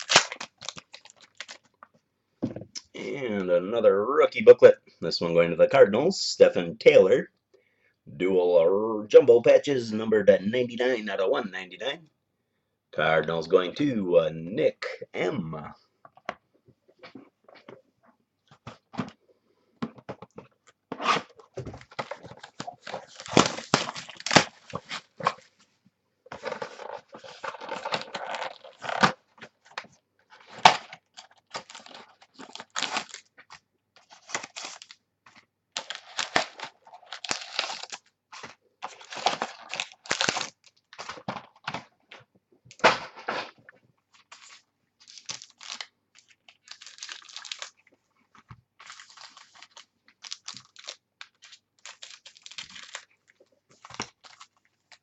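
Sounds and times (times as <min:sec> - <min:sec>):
wrapper tearing and crinkling: 0:00.0 - 0:01.8, 0:21.9 - 0:25.4, 0:26.4 - 0:29.8, 0:30.4 - 0:35.0, 0:35.8 - 0:41.6, 0:44.2 - 0:47.8, 0:48.8 - 0:55.0
cards rustling and clicking: 0:26.3 - 0:43.6, 0:44.2 - 0:55.0.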